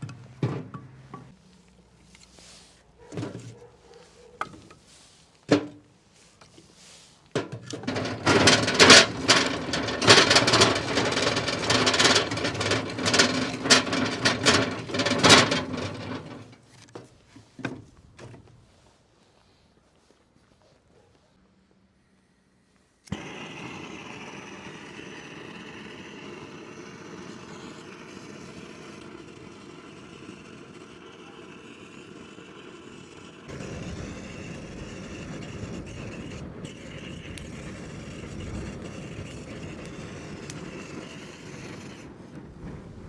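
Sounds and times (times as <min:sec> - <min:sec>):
scraping and rustling with clicks: 0:01.2 - 0:21.4.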